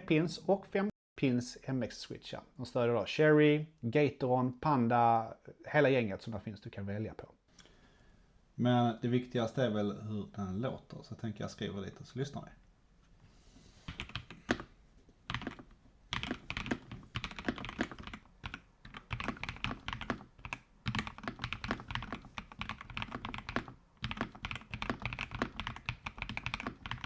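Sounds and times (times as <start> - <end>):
mechanical keyboard typing: 13.9 - 14.7, 15.3 - 27.0.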